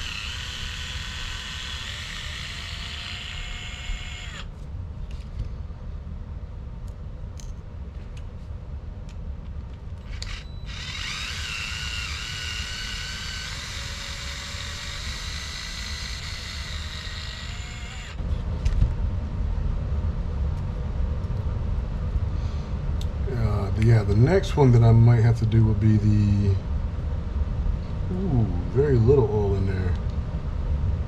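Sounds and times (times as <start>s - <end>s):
small motor whining: 0.0s - 4.5s, 10.1s - 18.2s
low rumble: 26.5s - 31.0s.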